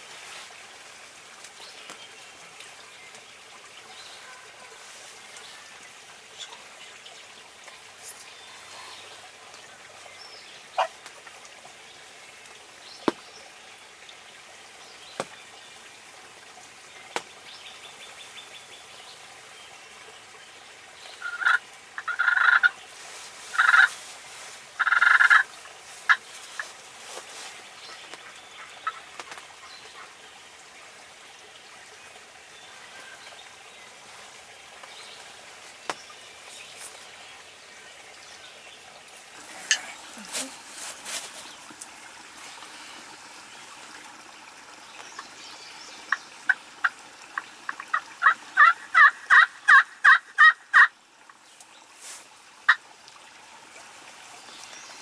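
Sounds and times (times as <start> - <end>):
faint trickling water: 0.0 - 55.0
turkey gobbling: 21.2 - 22.7, 23.5 - 24.0, 24.8 - 25.5, 47.9 - 50.9.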